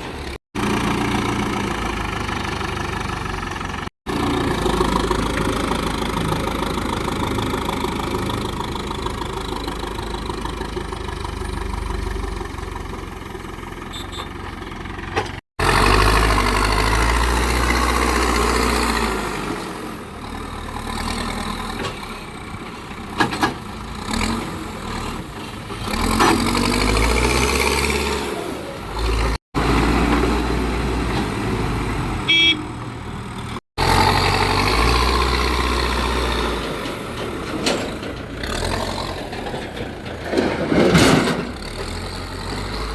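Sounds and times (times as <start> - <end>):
diesel engines running: 0.0 - 42.9.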